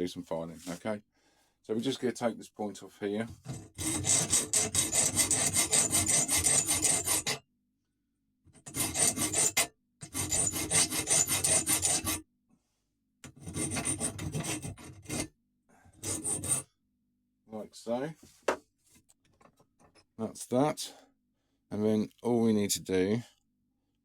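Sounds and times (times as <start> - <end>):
hand file rasping on metal: 3.5 - 7.4, 8.6 - 12.2, 13.2 - 15.3, 16.0 - 16.7.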